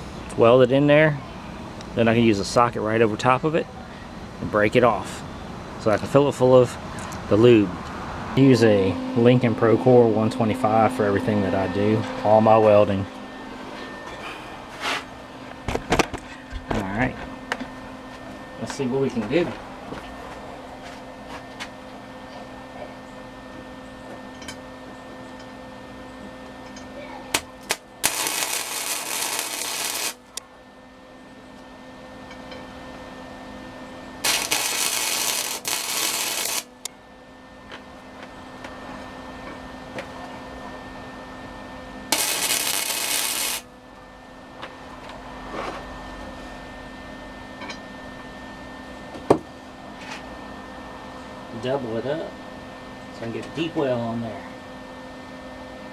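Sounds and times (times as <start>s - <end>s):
steady hum: 0.0s - 55.9s
hissing welding arc: 27.3s - 30.4s, 34.2s - 36.9s, 42.1s - 43.7s
welder arc strikes: 27.3s - 30.4s, 34.2s - 36.9s, 42.1s - 43.7s.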